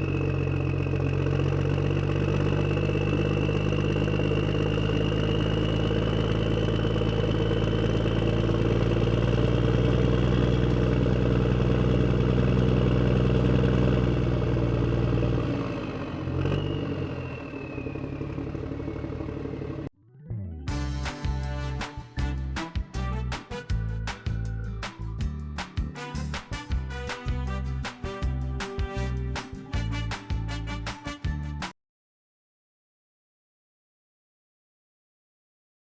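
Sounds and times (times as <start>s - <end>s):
heavy machine engine running: 0.0s - 19.9s
high whine: 20.1s - 31.6s.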